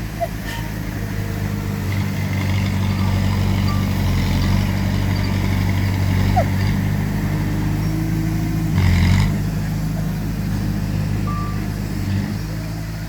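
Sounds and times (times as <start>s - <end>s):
diesel engine running: 0.0s - 13.0s
reversing beep: 2.9s - 5.7s, 11.2s - 11.7s.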